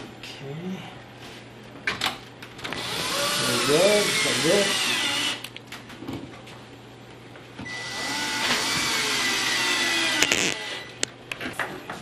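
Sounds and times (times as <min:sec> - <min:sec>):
power drill driving a screw: 0:02.8 - 0:05.4, 0:07.7 - 0:11.0.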